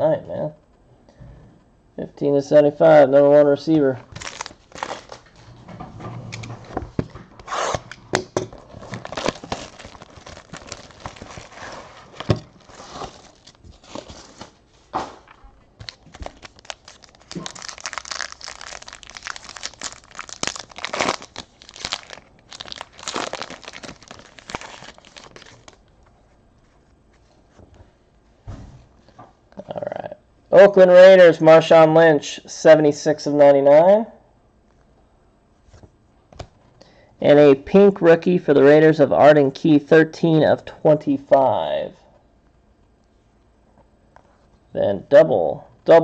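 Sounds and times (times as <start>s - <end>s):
plastic wrapping crinkling and tearing: 4.1s - 5.4s, 8.6s - 14.6s, 15.8s - 25.9s.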